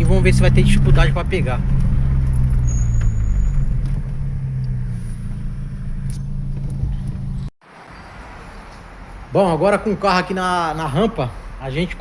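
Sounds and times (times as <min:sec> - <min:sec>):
car engine running: 0:00.0 - 0:07.5.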